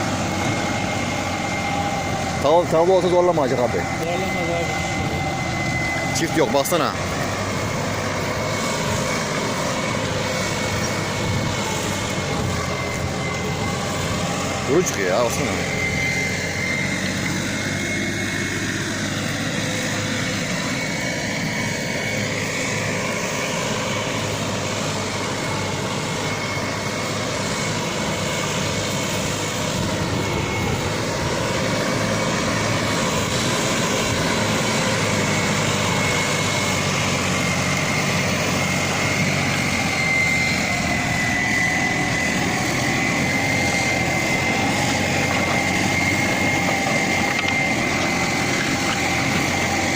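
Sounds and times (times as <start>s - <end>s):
steady high whine: 0.0s - 49.9s
tractor diesel engine running: 0.0s - 49.9s.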